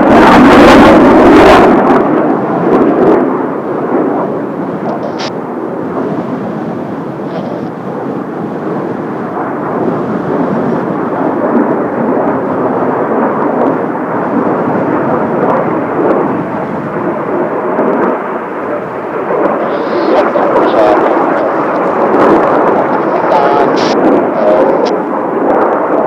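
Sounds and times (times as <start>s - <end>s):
jet engines rushing: 0.0s - 26.0s
strong wind: 0.0s - 26.0s.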